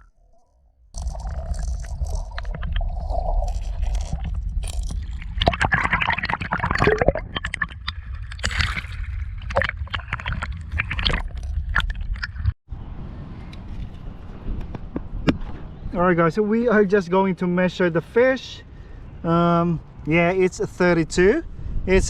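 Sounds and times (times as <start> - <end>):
shallow water splashing: 1.0 - 12.6.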